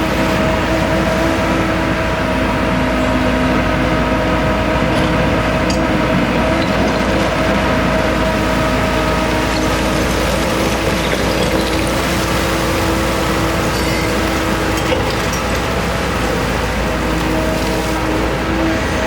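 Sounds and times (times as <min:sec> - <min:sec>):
excavator diesel engine running: 0:00.0 - 0:19.0.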